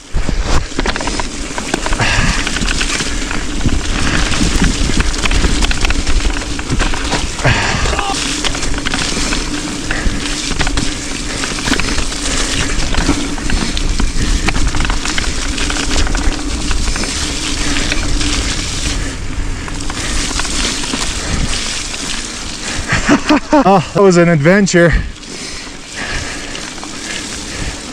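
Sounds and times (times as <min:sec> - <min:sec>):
bike clicking and rattling: 0:00.0 - 0:27.9
bike tyre noise: 0:00.0 - 0:27.9
wind rush: 0:01.8 - 0:24.2.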